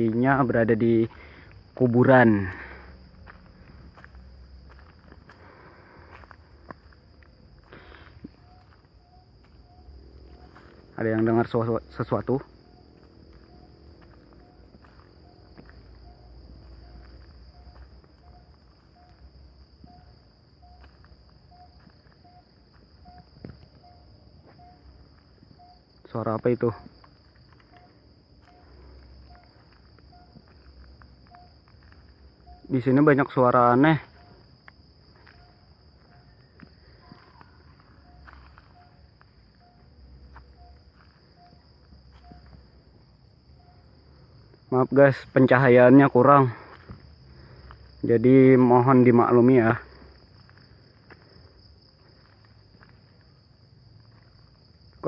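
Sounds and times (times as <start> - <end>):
crickets chirring: 0.0 - 55.0
faint footstep clicks: 3.2 - 9.6, 20.8 - 25.5, 26.8 - 32.4, 34.6 - 43.0.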